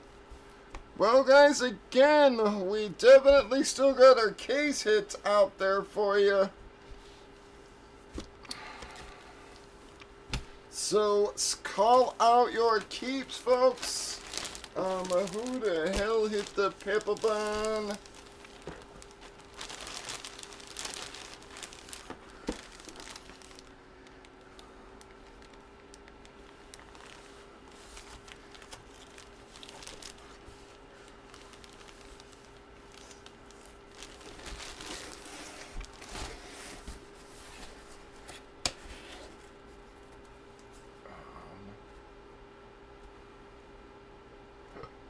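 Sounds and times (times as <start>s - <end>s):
faint steady hum: 0.0s - 45.0s
plastic packaging crinkling: 11.5s - 37.8s.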